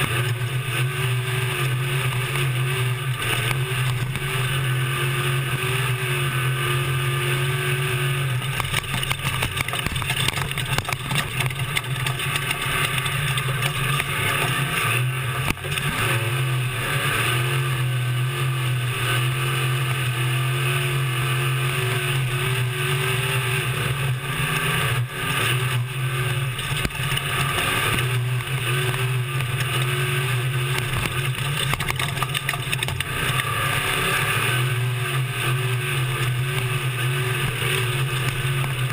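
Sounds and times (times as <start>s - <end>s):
truck engine running hard: 0.0s - 38.9s
knocks and rattles in cab: 8.4s - 16.0s, 30.6s - 33.5s.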